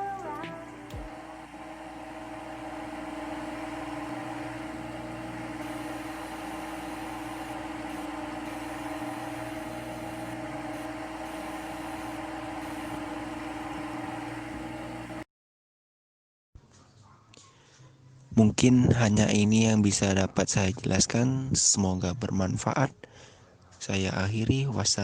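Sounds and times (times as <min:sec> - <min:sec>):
machine hum: 0:00.0 - 0:15.2.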